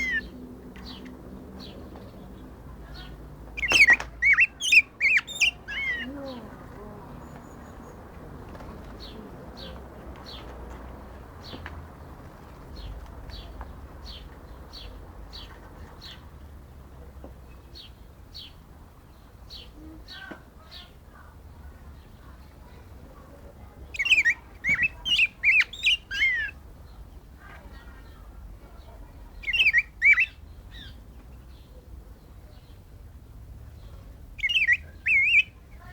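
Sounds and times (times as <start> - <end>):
bird chirping: 0.0 - 6.5, 23.9 - 27.0, 28.8 - 31.8, 33.8 - 35.9
bird song phrase: 0.0 - 8.1, 9.0 - 10.4, 17.5 - 22.9, 23.9 - 32.9, 33.8 - 35.9.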